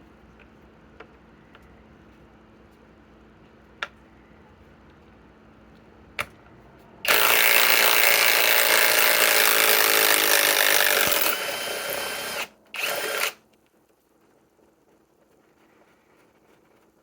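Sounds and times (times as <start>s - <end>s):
impact wrench running: 7.1s - 13.4s.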